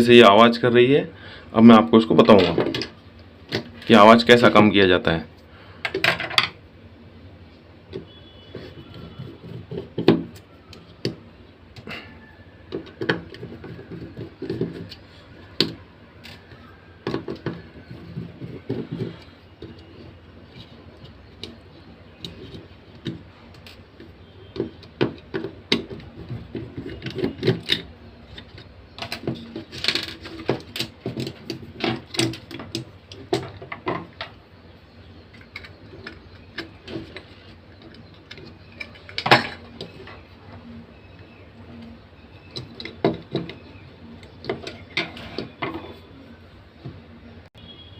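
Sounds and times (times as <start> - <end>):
plastic and metal parts clicking: 12.7 - 34.4.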